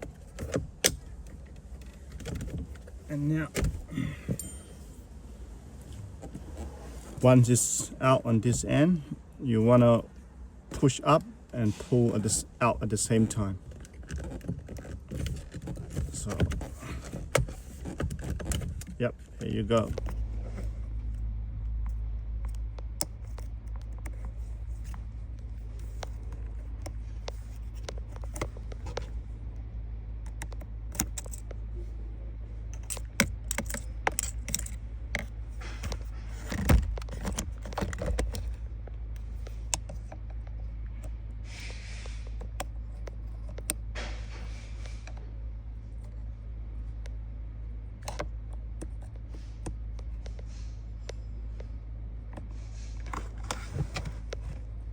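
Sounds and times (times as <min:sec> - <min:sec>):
steady low hum: 0:00.0 - 0:54.9
tools clicking and rattling: 0:30.3 - 0:31.6, 0:32.7 - 0:38.6, 0:41.7 - 0:45.0.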